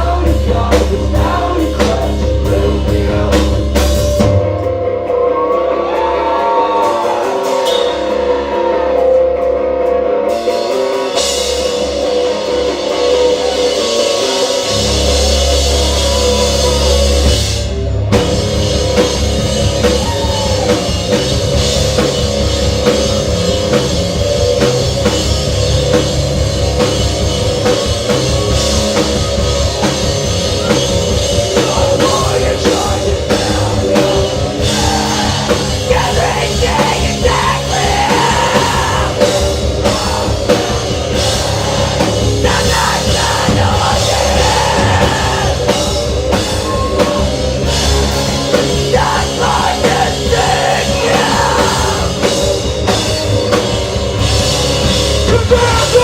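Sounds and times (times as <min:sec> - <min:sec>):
person singing: 0:00.0 - 0:04.0, 0:29.0 - 0:47.4, 0:48.5 - 0:52.4
live rock band playing: 0:00.0 - 0:56.0
pounding drum kit: 0:00.0 - 0:56.0.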